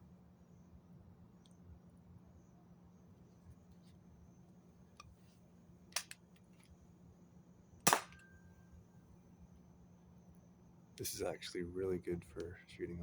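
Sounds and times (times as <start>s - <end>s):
toy blaster sharp snaps: 6.0s - 6.2s, 7.9s - 8.2s.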